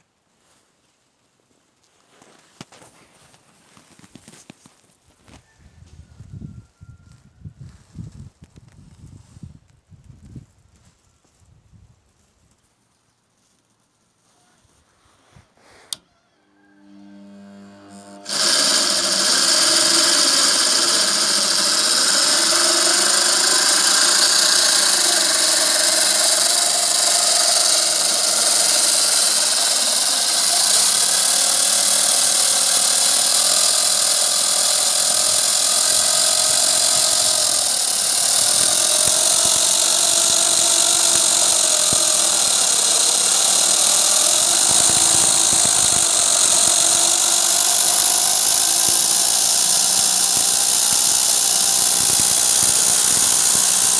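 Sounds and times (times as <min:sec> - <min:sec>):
electric saw whining: 0:16.7 - 0:53.9.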